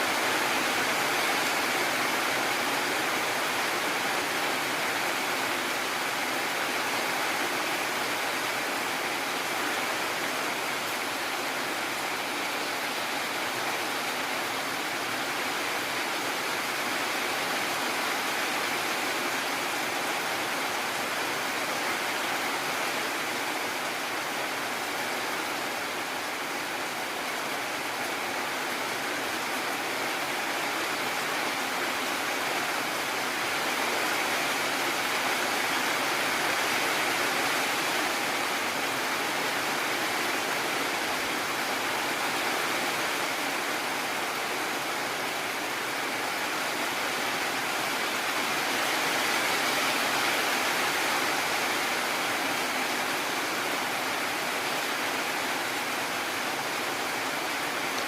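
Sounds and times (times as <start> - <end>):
heavy rain: 0.0 - 58.0.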